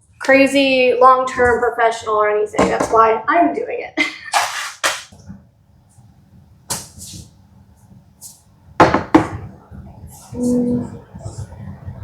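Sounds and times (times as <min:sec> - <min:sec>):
sharp knocks on wood: 0:08.8 - 0:09.4.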